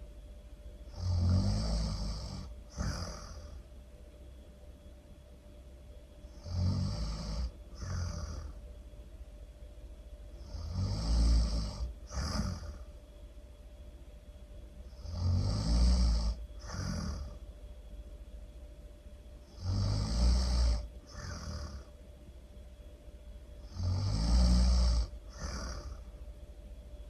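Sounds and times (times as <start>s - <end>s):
person snoring loudly: 0.9s - 3.6s, 6.3s - 8.6s, 10.4s - 12.9s, 14.9s - 17.4s, 19.5s - 21.9s, 23.6s - 26.1s.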